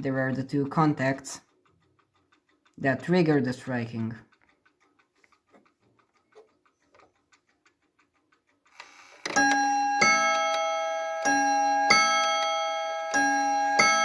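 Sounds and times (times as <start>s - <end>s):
faint clock ticking: 0.0s - 14.0s
clock chime rods striking: 9.3s - 14.0s.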